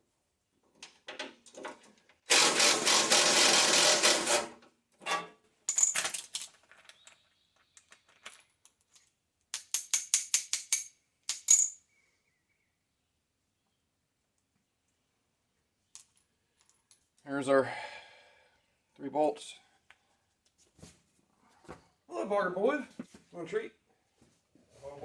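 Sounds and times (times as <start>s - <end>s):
hand tools and bolts clinking: 5.0s - 11.9s.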